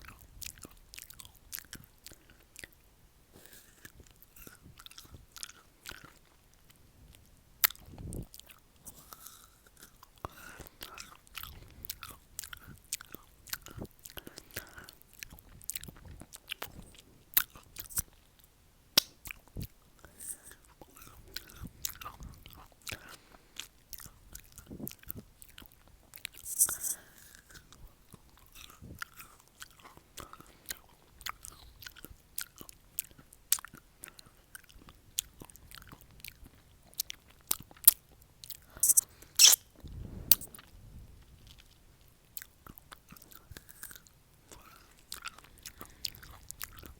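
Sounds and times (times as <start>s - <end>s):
chewing crisp pear: 0.0s - 18.6s, 19.2s - 40.7s, 41.3s - 46.9s
wet mouth clicks: 26.3s - 27.0s, 37.9s - 39.6s, 40.3s - 40.5s.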